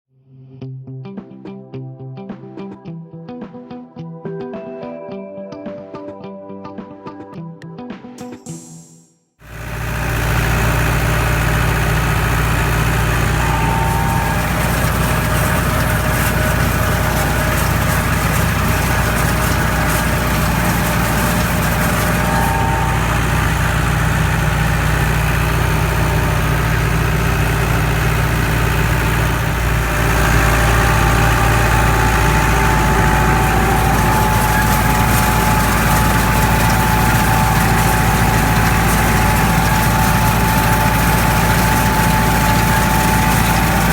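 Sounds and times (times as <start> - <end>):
tractor engine running: 9.4 - 43.9.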